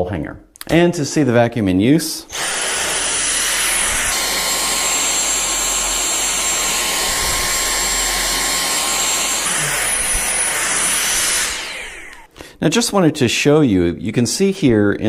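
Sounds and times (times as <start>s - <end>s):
cordless vacuum cleaner running: 2.3s - 12.3s.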